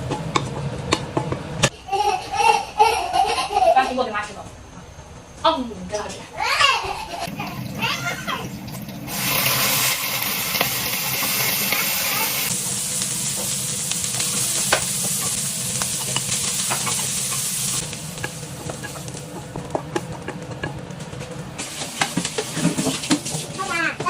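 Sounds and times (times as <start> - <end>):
food sizzling in a pan: 7.2 - 24.0.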